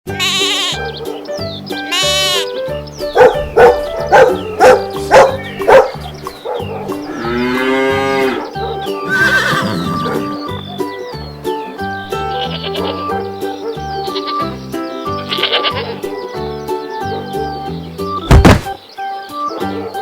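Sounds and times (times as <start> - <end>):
bleat-like cry: 0.1 - 0.8, 1.9 - 2.5, 9.0 - 10.4, 15.2 - 16.1
children's music: 0.1 - 9.4
cow mooing: 6.9 - 10.4.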